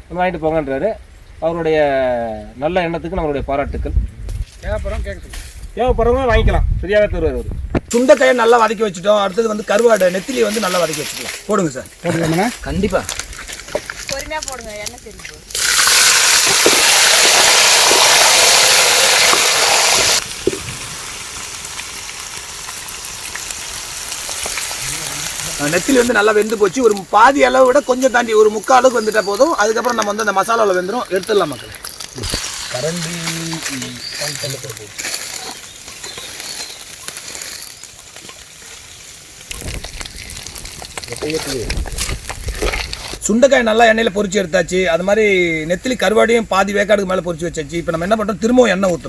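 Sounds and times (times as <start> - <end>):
fish sizzling in hot oil: 13.3 - 43.2.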